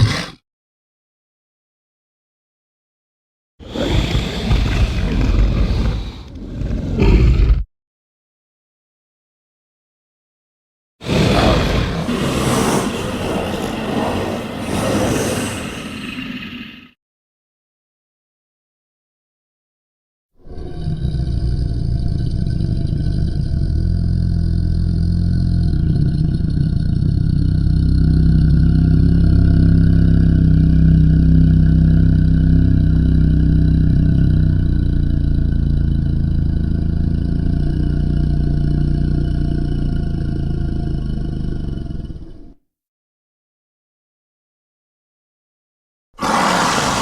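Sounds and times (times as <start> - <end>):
deep rumbling drone: 20.5 - 42.5.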